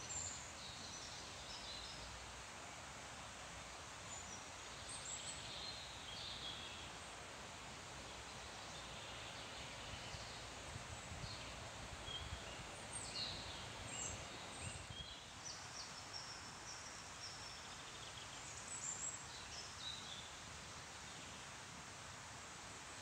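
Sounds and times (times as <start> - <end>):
leaves rustling in wind: 0.0 - 23.0
songbirds chirping and trilling: 8.1 - 20.3.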